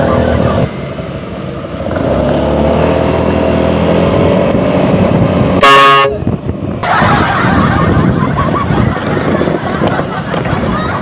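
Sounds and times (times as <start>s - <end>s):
loud bus horn blast: 5.6s - 6.3s.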